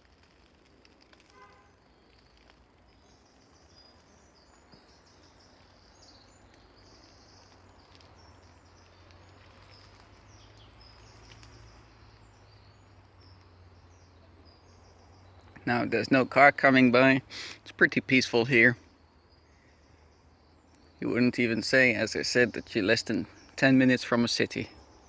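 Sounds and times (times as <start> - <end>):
small birds chirping: 0.0 - 25.0.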